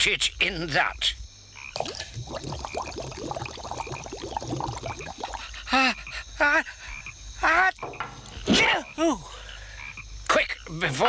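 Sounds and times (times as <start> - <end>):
cartoon liquid bubbling: 1.7 - 6.1.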